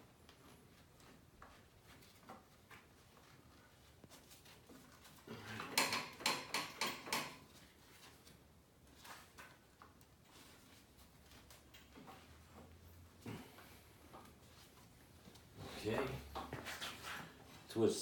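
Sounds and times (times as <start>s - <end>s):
sharp metal knocks: 5.7s - 7.4s.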